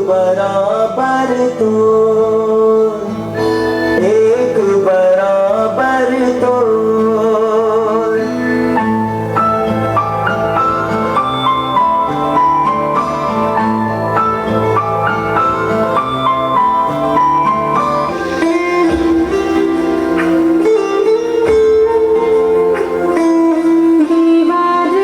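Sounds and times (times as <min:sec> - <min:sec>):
plucked string melody: 0:00.0 - 0:25.0
sustained wavering melodic line: 0:07.4 - 0:25.0.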